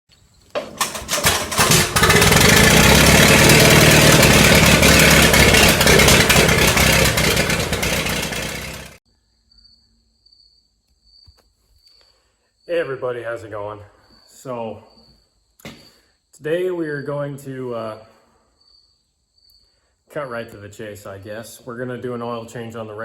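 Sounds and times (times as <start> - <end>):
tractor engine starting and running: 0.4 - 9.0.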